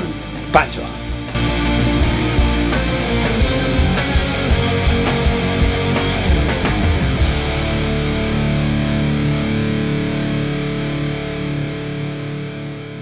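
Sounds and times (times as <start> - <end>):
drums: 0.0 - 9.6
distorted electric guitar rock: 0.0 - 13.0.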